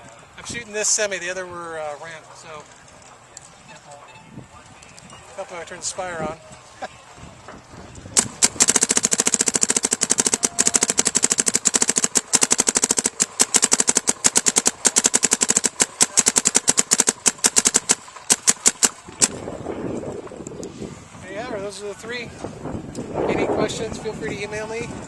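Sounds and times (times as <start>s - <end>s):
paintball marker firing: 8.2s - 19.4s.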